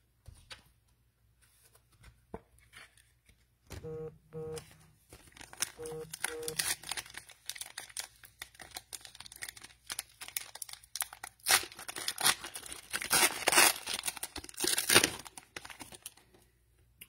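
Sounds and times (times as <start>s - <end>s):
cellophane wrapper crinkling: 5.1s - 16.5s.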